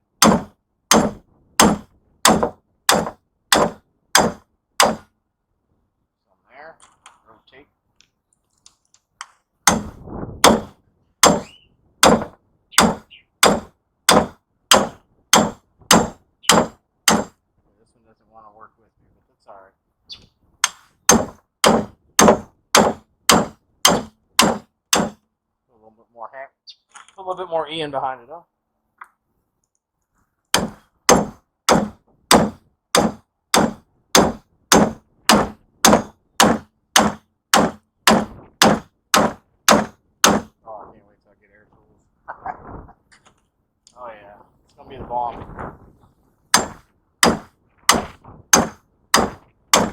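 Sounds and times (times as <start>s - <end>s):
hammer striking metal chisel: 0.2s - 5.1s, 9.6s - 17.4s, 20.6s - 25.2s, 30.5s - 40.6s, 46.5s - 49.9s.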